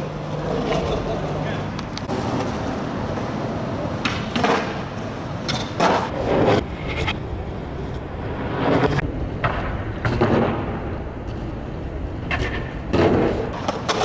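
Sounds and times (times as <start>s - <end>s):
sharp skateboard clack: 0.0s - 7.0s, 12.3s - 14.0s
skateboard wheels rolling on pavement: 0.0s - 14.0s.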